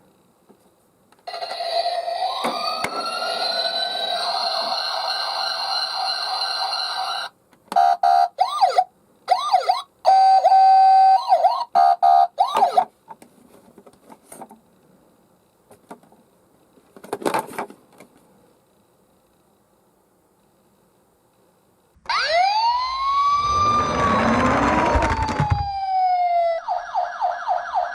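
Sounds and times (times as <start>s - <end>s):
toy electronic siren: 1.3s - 12.8s, 22.1s - 27.9s
short noise: 23.3s - 25.7s.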